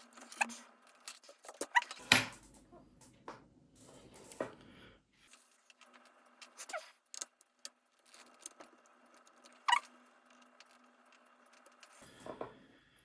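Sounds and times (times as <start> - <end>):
short high squeaks: 0.0 - 2.0, 5.6 - 12.0
small parts clicking and tapping: 0.0 - 2.6, 5.2 - 12.3.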